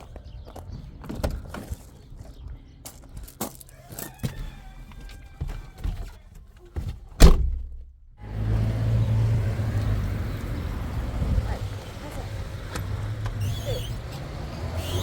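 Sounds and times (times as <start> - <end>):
loud thunk: 7.2 - 7.8
car engine hum: 8.2 - 15.0.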